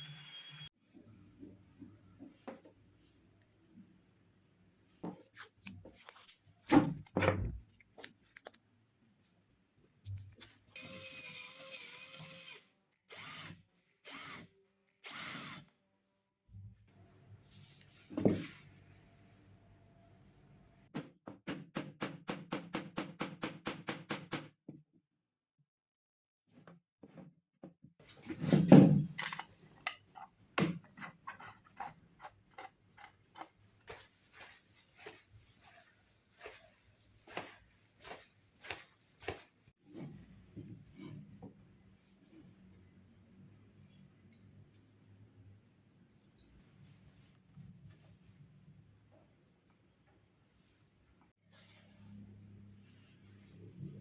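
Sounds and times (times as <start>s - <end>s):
small power drill running: 0.0s - 0.7s, 10.8s - 15.7s.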